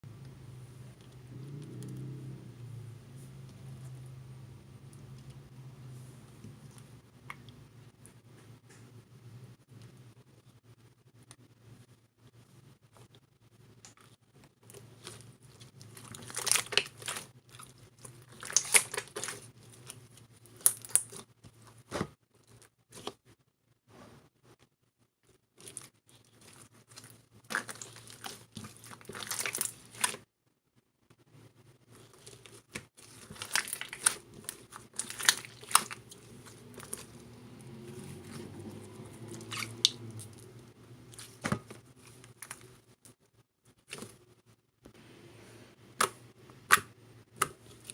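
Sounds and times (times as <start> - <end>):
slime crackling and popping: 14.7 - 23.2, 25.6 - 30.2, 32.0 - 42.6.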